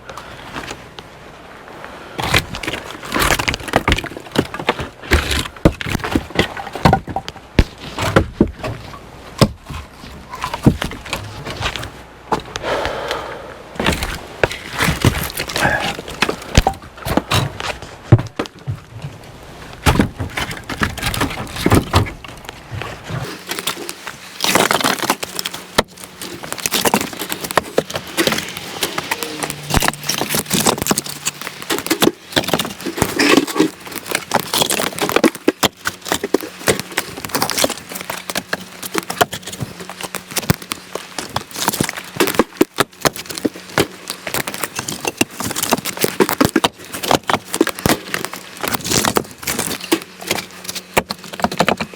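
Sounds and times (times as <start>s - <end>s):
firewood pieces knocking together: 2.2s - 13.0s, 13.8s - 19.1s.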